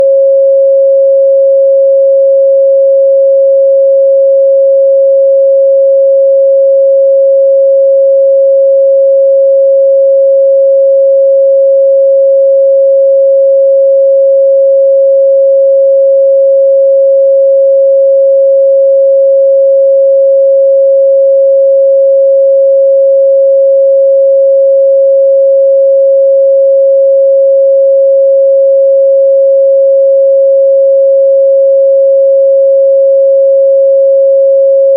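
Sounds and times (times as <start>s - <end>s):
sine wave test tone: 0.0s - 34.9s.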